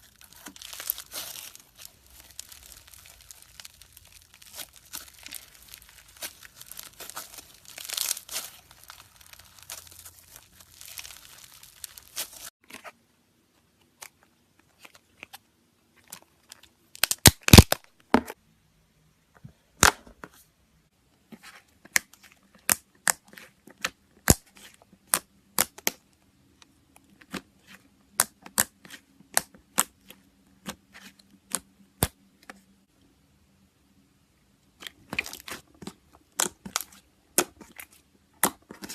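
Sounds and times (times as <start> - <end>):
slime crackling and popping: 0.0 - 12.5, 17.0 - 17.8, 34.8 - 38.9.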